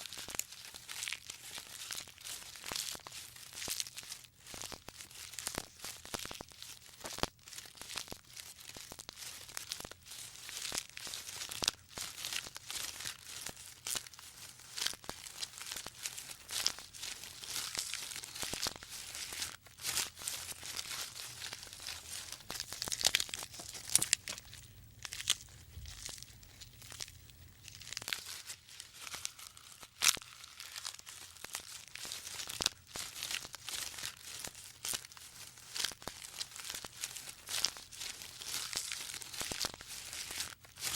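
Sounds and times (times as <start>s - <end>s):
dense crackling and tearing: 0.0s - 40.9s
faint low hum: 15.4s - 38.9s.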